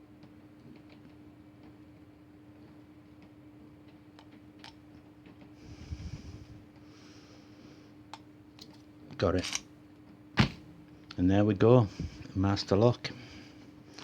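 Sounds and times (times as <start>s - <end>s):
steady low hum: 0.0s - 14.0s
soft breaths: 5.4s - 8.1s, 11.8s - 14.0s.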